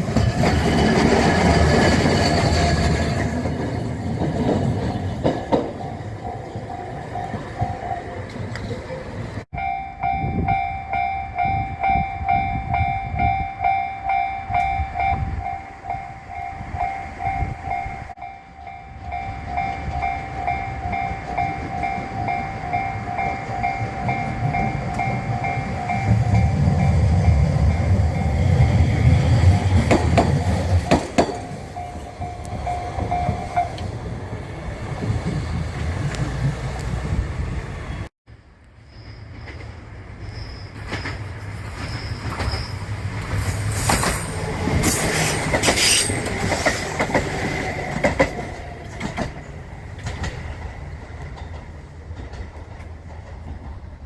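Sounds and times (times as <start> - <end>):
train rumbling over crossing: 0.0 - 54.0
level crossing warning bell: 5.6 - 8.3, 9.5 - 33.9
train wheel clacks: 19.6 - 33.9, 40.8 - 54.0.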